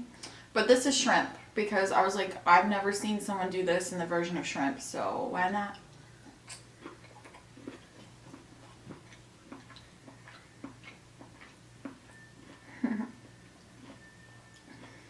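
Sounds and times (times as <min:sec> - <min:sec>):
low steady hum: 0:00.0 - 0:15.0
chewing crunchy food: 0:05.7 - 0:15.0.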